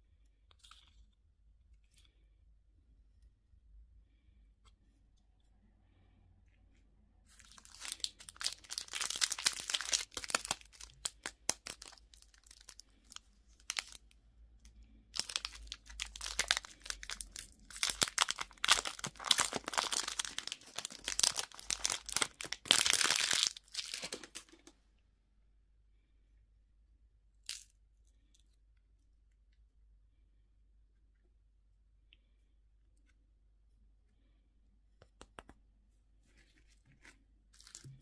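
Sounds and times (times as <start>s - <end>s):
candy wrapper crinkling: 7.3s - 14.2s, 15.1s - 24.7s, 37.0s - 38.0s.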